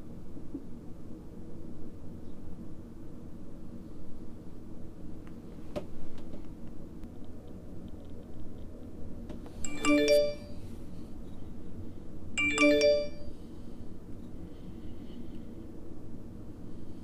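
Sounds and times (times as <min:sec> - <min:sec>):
doorbell electronic chime jingles: 0:09.7 - 0:10.6, 0:12.4 - 0:13.3.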